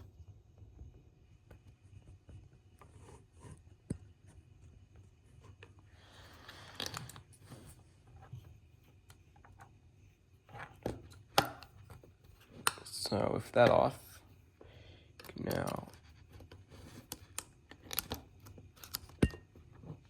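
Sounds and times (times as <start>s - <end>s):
plastic parts clicking: 16.9s - 19.3s.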